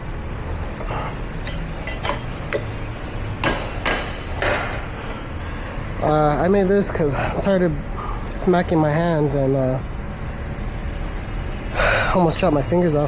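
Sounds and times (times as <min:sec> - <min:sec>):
hammer tapping steel: 0:03.4 - 0:04.8.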